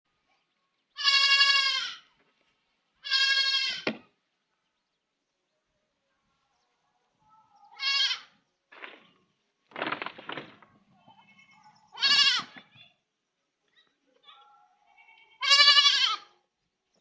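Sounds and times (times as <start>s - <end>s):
goat kid bleating: 1.0s - 2.1s, 3.0s - 3.9s, 7.6s - 8.4s, 11.0s - 12.8s, 14.7s - 16.5s.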